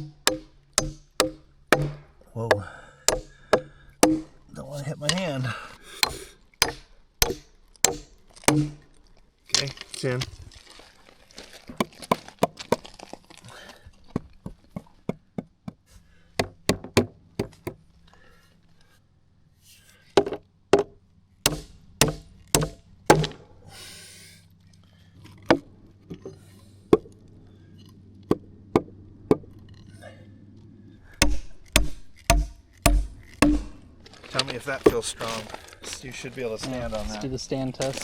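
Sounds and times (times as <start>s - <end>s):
hammer striking nails into wood: 0.0s - 4.4s, 5.0s - 5.3s, 5.9s - 8.9s, 16.4s - 17.8s, 20.2s - 23.4s, 31.2s - 33.8s.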